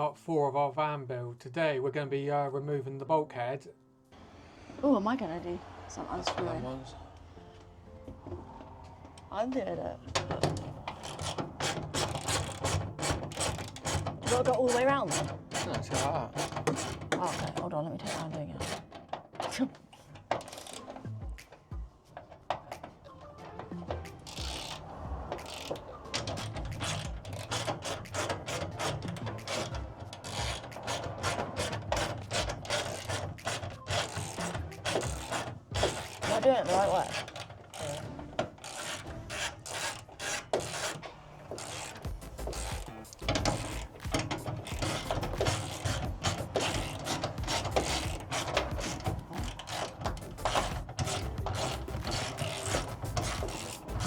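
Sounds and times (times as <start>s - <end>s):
hand ratchet clicking: 10.1s - 54.0s.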